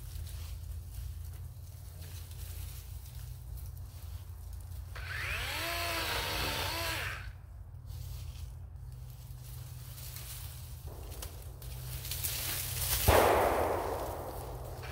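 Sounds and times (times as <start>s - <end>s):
electric chainsaw motor whining: 4.9s - 7.4s.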